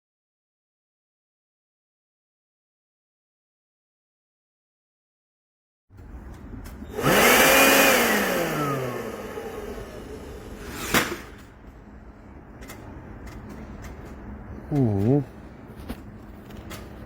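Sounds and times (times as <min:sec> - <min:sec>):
power tool motor whining: 0:06.9 - 0:11.4.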